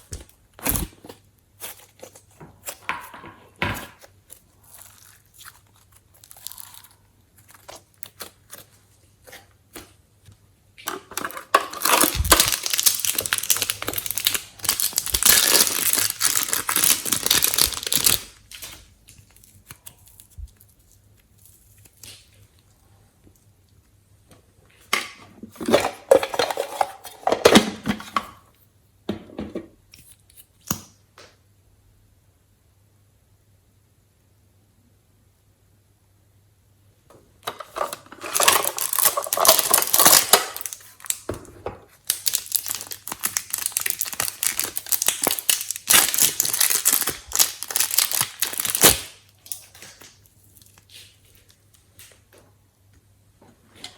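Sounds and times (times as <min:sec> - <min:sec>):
slime crackling and tearing: 0:04.3 - 0:08.7, 0:11.7 - 0:22.3, 0:38.2 - 0:41.2, 0:42.0 - 0:51.1.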